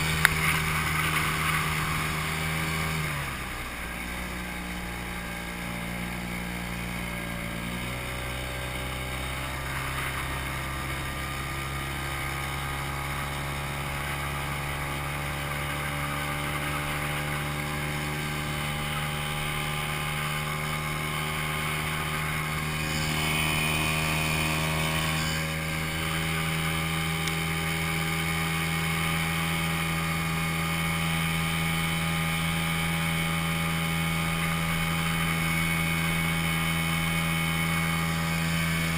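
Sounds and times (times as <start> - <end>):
outboard motor running: 0.0 - 38.9.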